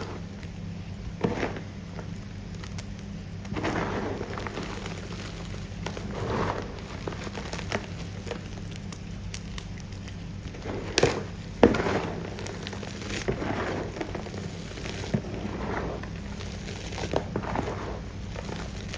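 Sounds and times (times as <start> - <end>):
chalk crunching and chewing: 0.0 - 18.9.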